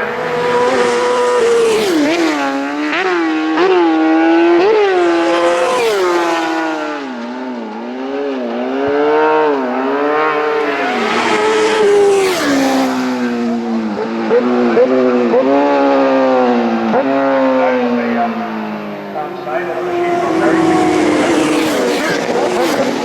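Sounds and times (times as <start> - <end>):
racing motorcycles at full throttle: 0.0 - 23.0.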